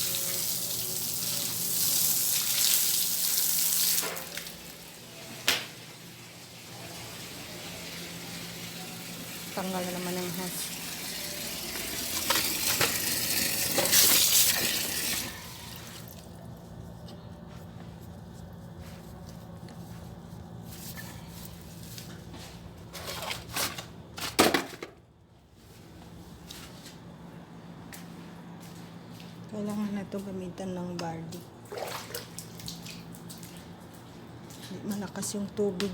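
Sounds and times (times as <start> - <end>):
water gushing from hose: 0.0 - 4.8, 8.2 - 16.2.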